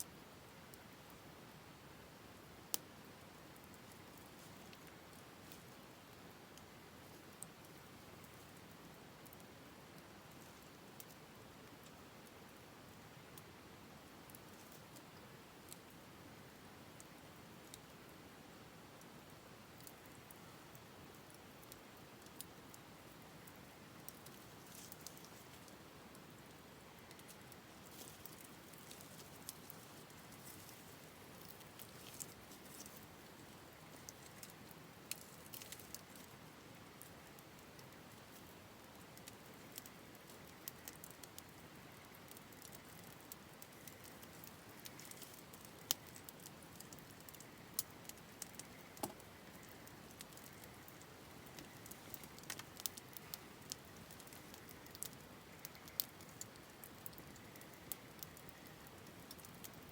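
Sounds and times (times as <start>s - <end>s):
campfire crackling: 0.0s - 59.9s
low steady hiss: 0.0s - 59.9s
fire pops and snaps: 23.5s - 59.8s.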